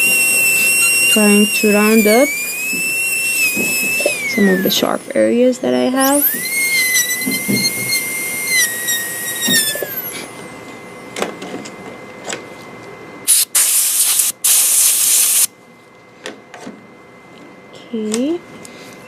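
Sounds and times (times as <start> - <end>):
compressed air hissing blasts: 0.0 - 5.1, 6.1 - 10.2, 13.3 - 15.5
dental drill whining: 0.0 - 10.6, 13.3 - 15.5.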